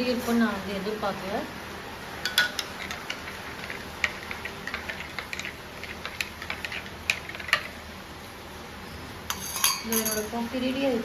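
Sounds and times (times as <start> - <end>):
spoon clinking in a cup: 9.3 - 10.4.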